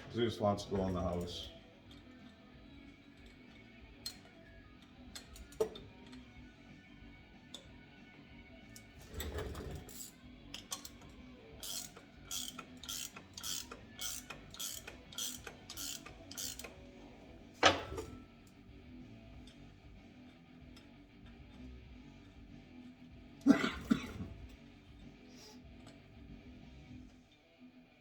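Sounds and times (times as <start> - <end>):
low background music: 0.0 - 28.0
ratchet wrench clicking: 9.9 - 16.8.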